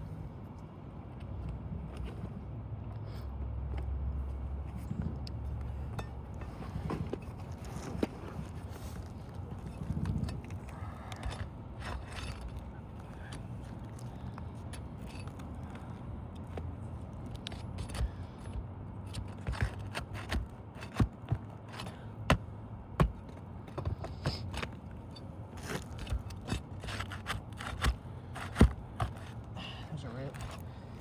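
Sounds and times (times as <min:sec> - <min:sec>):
flat bar scraping under shingles: 0:06.4 - 0:16.0, 0:19.1 - 0:31.0.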